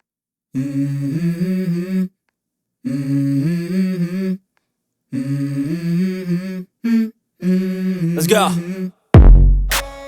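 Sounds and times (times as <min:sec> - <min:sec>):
person humming: 0:05.2 - 0:09.0.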